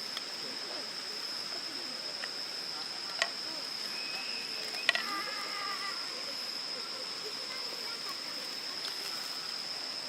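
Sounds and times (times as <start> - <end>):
high-pitched insect trill: 0.0 - 10.0.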